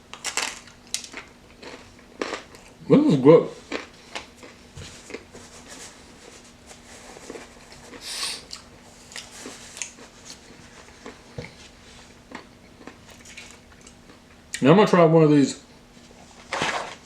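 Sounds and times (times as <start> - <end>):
short soft hiss: 8.0 - 8.5.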